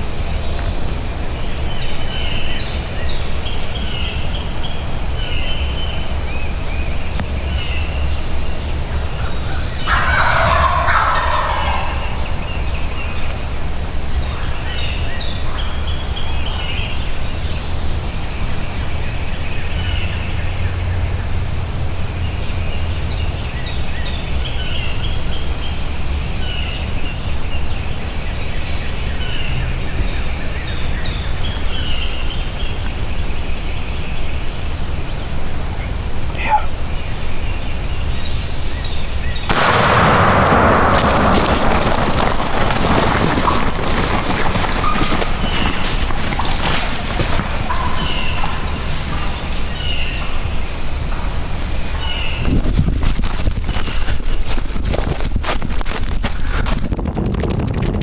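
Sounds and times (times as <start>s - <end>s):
songbirds chirping: 0.0s - 55.1s
turkey gobbling: 7.5s - 17.0s, 27.7s - 52.5s.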